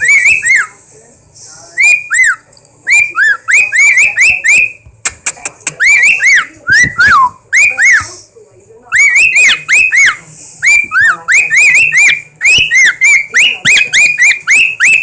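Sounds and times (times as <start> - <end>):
bird whistling: 1.7 - 4.8, 5.7 - 8.1, 8.9 - 15.0.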